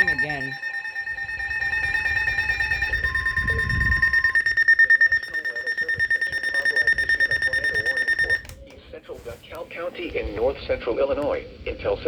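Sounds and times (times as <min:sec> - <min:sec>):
high-pitched pulsing alarm tone: 0:00.0 - 0:08.5
lower steady tone: 0:00.0 - 0:08.5.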